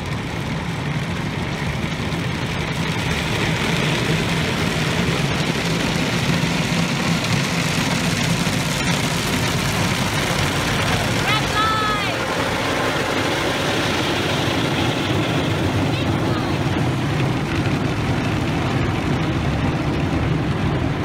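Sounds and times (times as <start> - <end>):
car wash machinery humming: 0.0 - 21.0
water rushing in car wash: 0.0 - 21.0.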